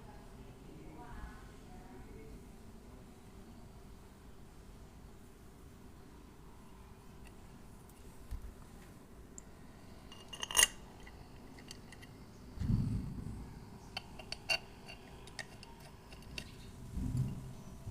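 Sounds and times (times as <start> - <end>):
metal parts clinking: 10.1 - 12.2, 14.0 - 16.6.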